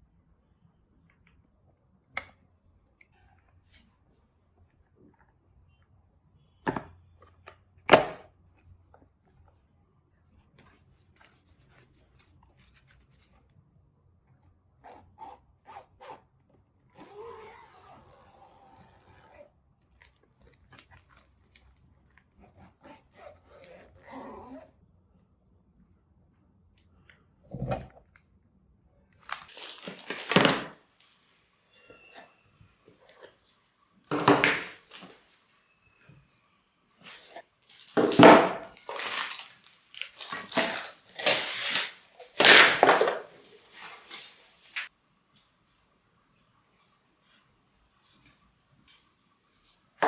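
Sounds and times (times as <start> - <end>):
crinkling rustle: 29.2 - 32.3, 33.0 - 36.4, 37.0 - 44.9.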